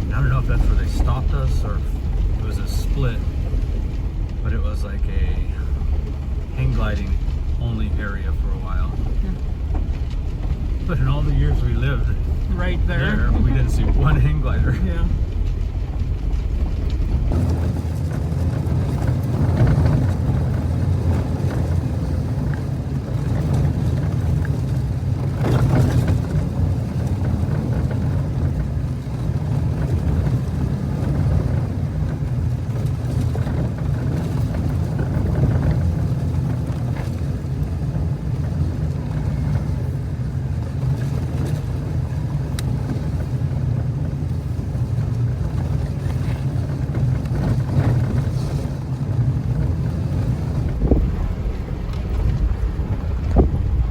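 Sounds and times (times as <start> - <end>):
engine and drivetrain rumble: 0.0 - 53.9
tyres on rough road: 0.0 - 53.9.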